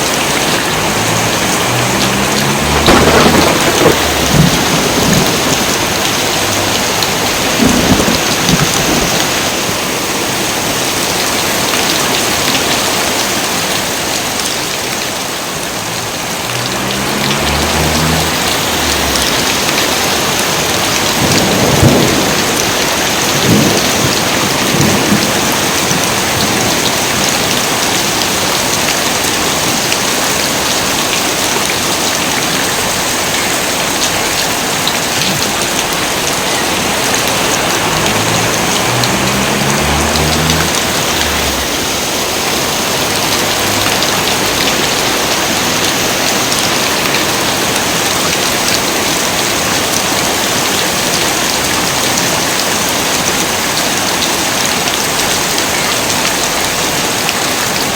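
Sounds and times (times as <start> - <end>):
thunder rumbling: 0.0 - 9.5, 15.5 - 27.8, 35.4 - 45.3
heavy rain falling: 0.0 - 57.9.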